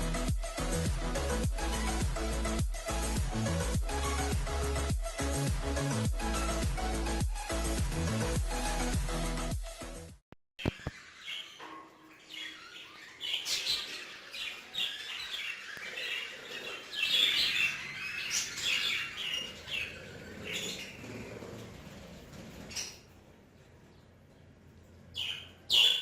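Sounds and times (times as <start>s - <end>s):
budgerigars chirping: 10.7s - 21.4s, 25.2s - 26.0s.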